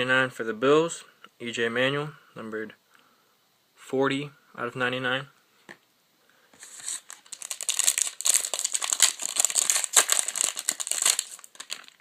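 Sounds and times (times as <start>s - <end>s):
wrapper being torn and crinkled: 6.7s - 12.0s.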